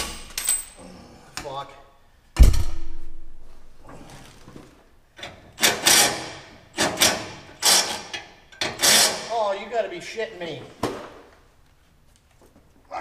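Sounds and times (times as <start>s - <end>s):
loud metal clunk: 2.4s - 3.8s.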